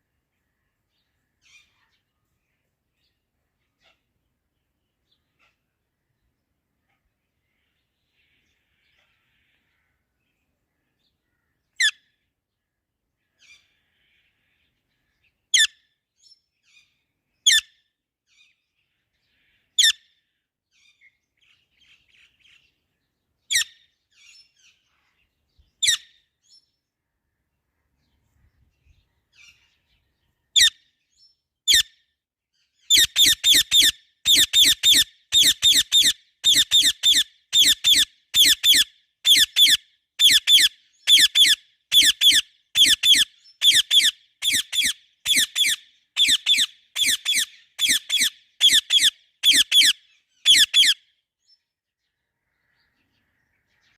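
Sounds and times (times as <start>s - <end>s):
parrot chirping calls: 23.5s - 24.4s, 25.8s - 26.2s, 31.7s - 32.0s, 32.9s - 51.1s.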